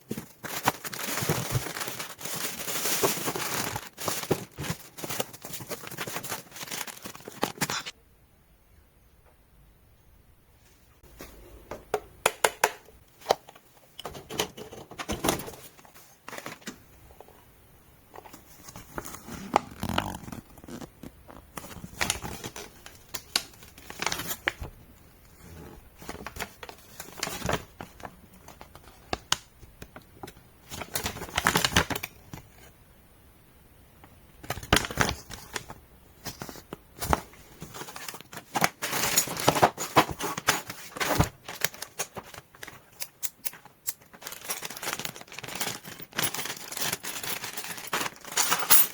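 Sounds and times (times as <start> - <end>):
packaging crinkling: 0.1 - 7.9, 43.6 - 48.4
small parts clicking and knocking: 42.8 - 48.9.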